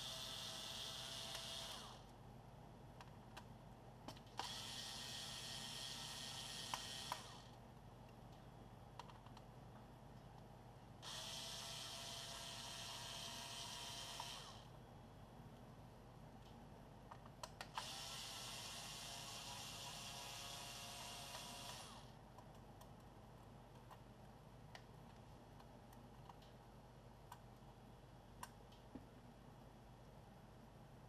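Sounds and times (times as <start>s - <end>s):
electric screwdriver running: 0.0s - 2.0s, 4.4s - 7.5s, 11.0s - 14.7s, 17.8s - 22.1s.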